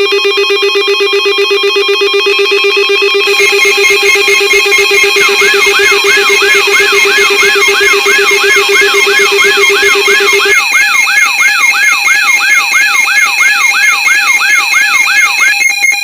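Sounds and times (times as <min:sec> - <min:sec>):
falling alarm sweep: 0:00.0 - 0:16.0
steady high alarm tones: 0:00.0 - 0:16.0
low pulsing tone: 0:00.6 - 0:10.6.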